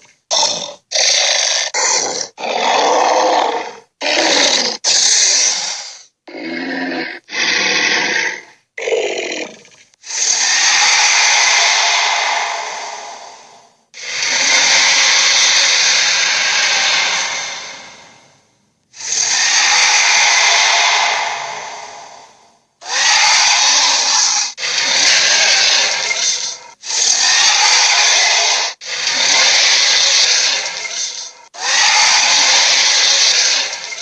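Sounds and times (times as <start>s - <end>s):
long noisy gorilla calls: 10.0s - 13.4s, 14.0s - 18.1s, 19.0s - 34.0s.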